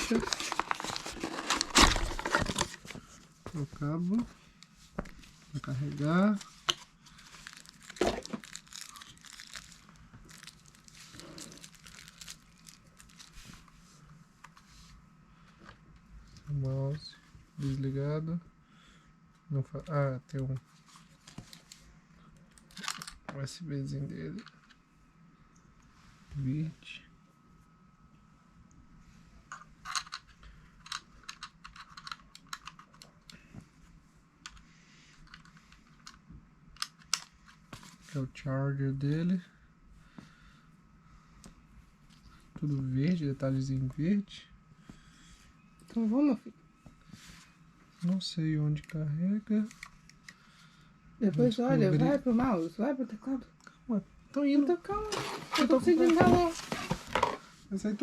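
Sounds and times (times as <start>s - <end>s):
plastic packaging crinkling: 0.0s - 3.0s, 7.1s - 13.6s
small plastic parts clicking: 29.9s - 33.4s.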